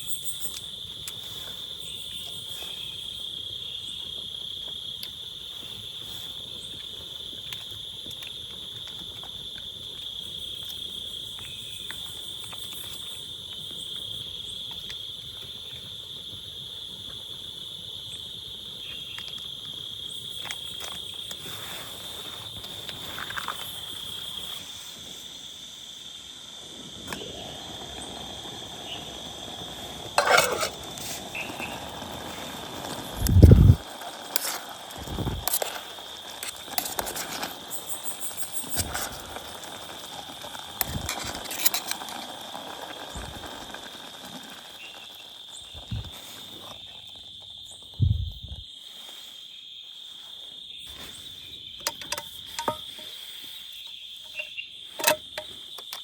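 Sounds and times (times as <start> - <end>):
crickets chirring: 0.0 - 56.0
utensils clinking on cookware: 30.2 - 30.8.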